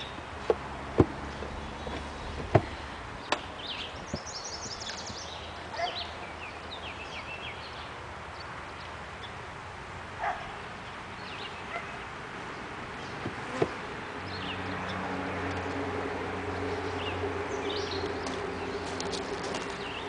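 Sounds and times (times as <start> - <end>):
birds chirping: 1.0 - 9.6, 10.2 - 20.0
bees buzzing: 13.0 - 14.7
close bee hum: 13.4 - 14.0.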